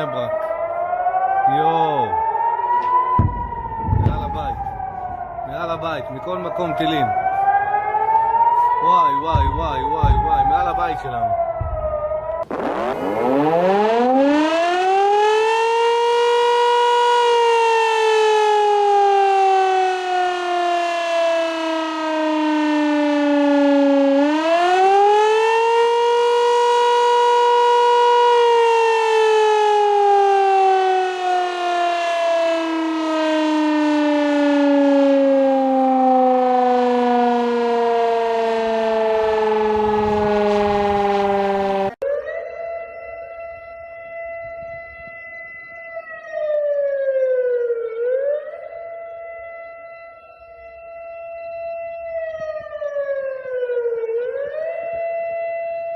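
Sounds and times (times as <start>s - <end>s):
steady alarm tone: 0.0s - 20.6s
air-raid siren wailing: 0.0s - 55.9s.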